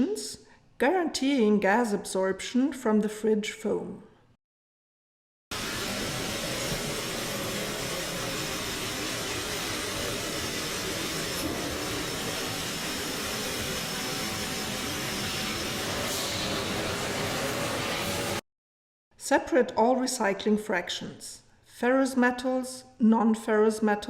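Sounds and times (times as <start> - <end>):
shredding plant machine noise: 5.5 - 18.4.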